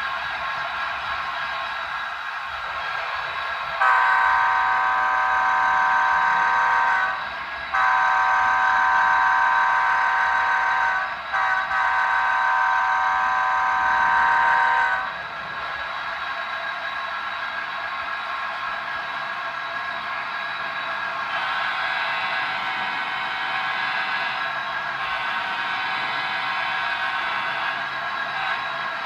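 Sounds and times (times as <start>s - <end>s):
multi-tone train horn blasts: 3.8s - 15.2s, 21.2s - 29.0s.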